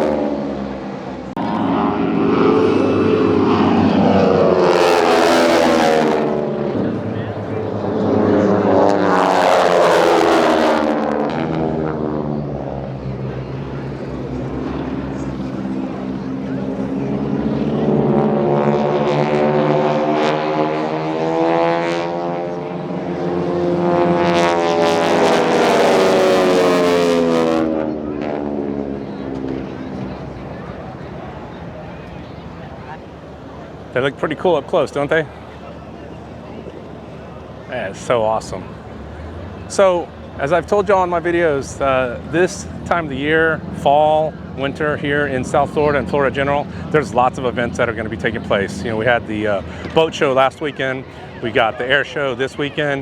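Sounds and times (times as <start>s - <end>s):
high-pitched rushing noise: 0.0s - 11.0s
propeller planes droning past: 0.0s - 53.0s.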